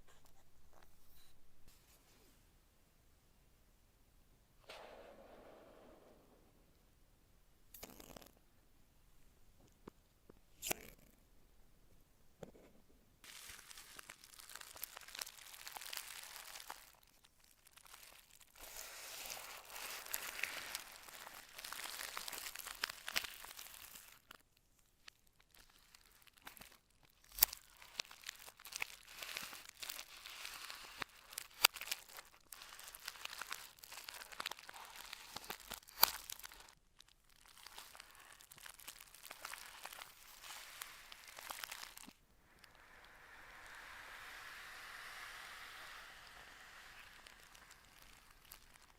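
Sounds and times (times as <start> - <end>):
paper and plastic crinkling: 13.3 - 24.4, 25.0 - 42.2, 46.7 - 48.9.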